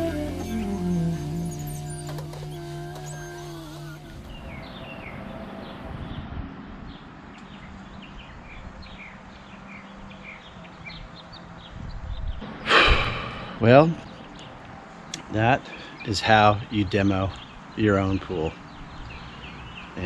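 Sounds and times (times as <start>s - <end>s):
background music: 0.0s - 2.9s
small birds chirping: 0.0s - 5.8s, 13.3s - 20.0s.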